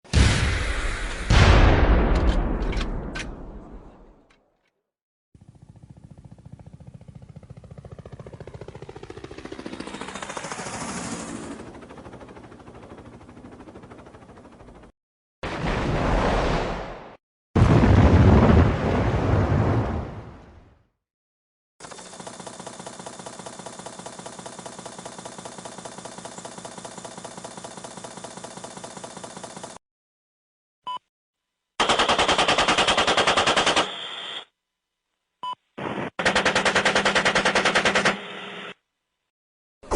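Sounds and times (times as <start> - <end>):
automatic machine-gun fire: 31.8 - 34.4, 35.8 - 38.4.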